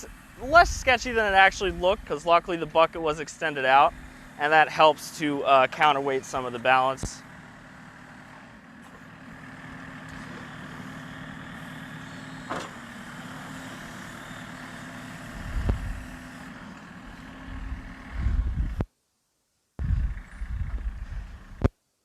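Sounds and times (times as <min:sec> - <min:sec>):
diesel engine running: 0:00.0 - 0:18.8, 0:19.8 - 0:21.7
low rumbling thumps: 0:15.4 - 0:16.0, 0:17.6 - 0:18.8, 0:19.8 - 0:21.7.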